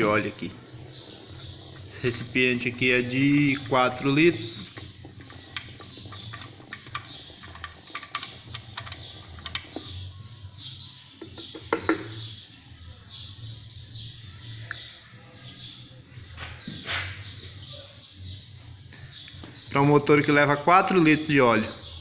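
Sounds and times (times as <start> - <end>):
small birds chirping: 0.0 - 22.0
sharp clicks and knocks: 4.6 - 10.0, 11.2 - 12.2.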